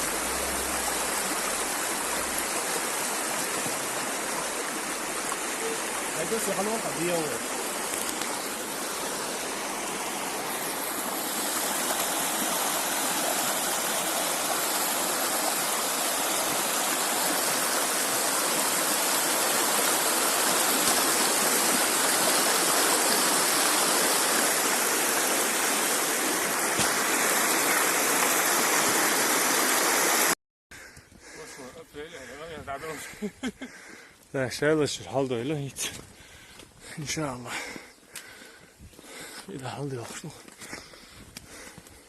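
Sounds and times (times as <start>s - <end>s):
stream water rushing: 0.0s - 30.4s.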